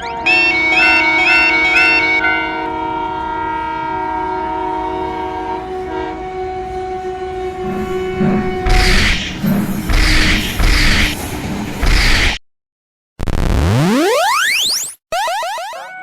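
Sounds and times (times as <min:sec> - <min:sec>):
train horn held chord: 0:00.1 - 0:09.2
higher repeated note: 0:07.7 - 0:11.2.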